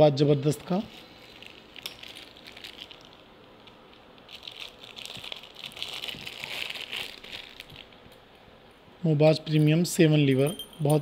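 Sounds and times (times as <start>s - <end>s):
packaging crinkling: 0.6s - 8.2s.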